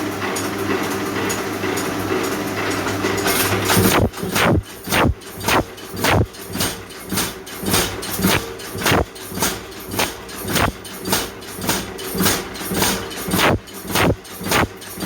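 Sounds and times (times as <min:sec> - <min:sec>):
machine hum: 0:03.8 - 0:06.3, 0:08.2 - 0:09.1, 0:10.0 - 0:10.7, 0:13.4 - 0:14.7.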